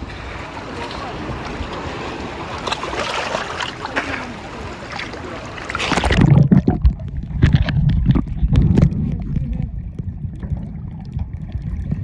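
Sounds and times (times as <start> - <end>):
water splashing and sloshing: 0.0 - 12.0
muffled underwater bubbly knocks: 5.7 - 12.0.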